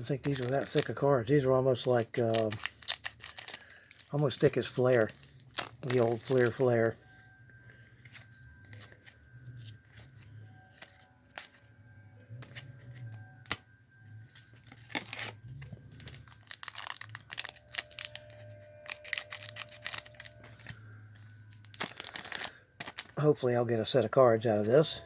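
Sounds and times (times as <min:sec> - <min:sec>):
foil wrappers tearing and crinkling: 0:00.0 - 0:06.9, 0:14.5 - 0:20.8, 0:21.6 - 0:23.3
faint background music: 0:00.0 - 0:25.0.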